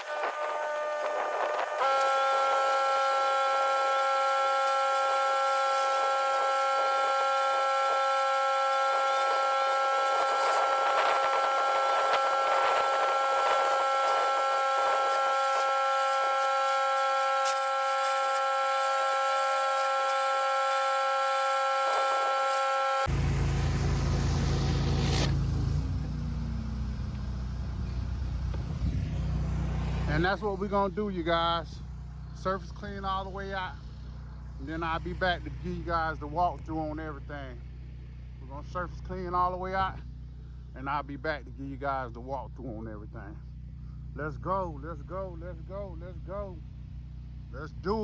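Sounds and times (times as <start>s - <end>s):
pressure washer whine: 0.0s - 30.9s.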